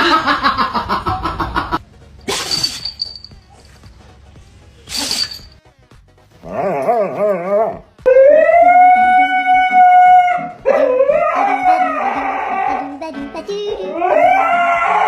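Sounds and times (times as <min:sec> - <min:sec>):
dog howling: 0:06.4 - 0:12.9, 0:13.9 - 0:15.0.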